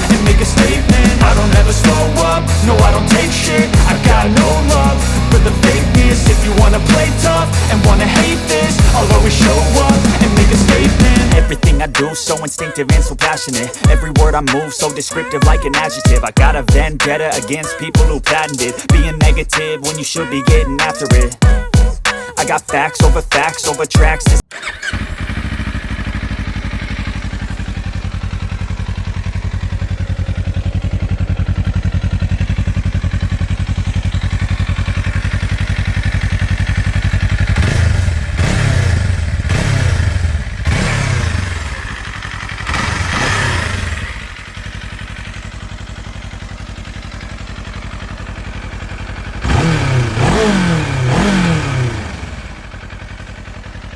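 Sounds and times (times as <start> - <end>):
engine revving throttle blips: 0.0 - 13.8, 24.4 - 45.8, 47.0 - 53.0
motorcycle engine idling: 0.0 - 53.9.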